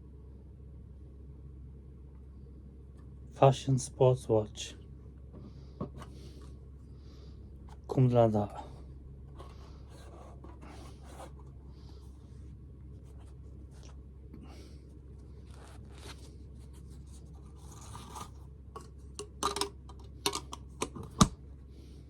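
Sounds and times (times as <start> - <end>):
packaging rustling and scraping: 15.4 - 19.0.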